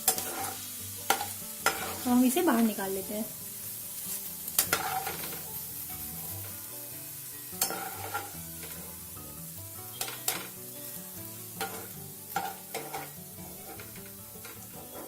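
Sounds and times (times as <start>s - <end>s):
potato shreds sizzling in oil: 0.0s - 15.0s
utensil clinking against pan: 11.6s - 15.0s.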